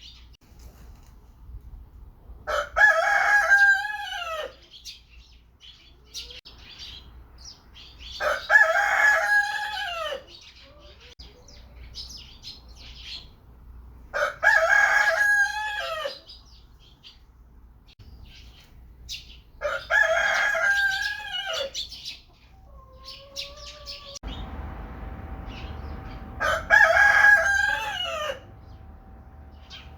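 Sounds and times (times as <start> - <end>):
rooster crowing: 2.5 - 4.6, 8.2 - 10.3, 14.2 - 16.2, 19.6 - 21.8, 22.8 - 29.9.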